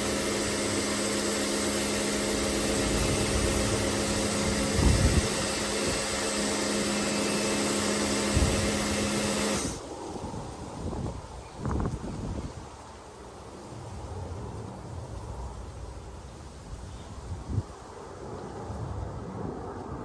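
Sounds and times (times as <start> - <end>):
hiss of water spray: 0.0 - 9.8
pressure washer motor humming: 0.0 - 9.8.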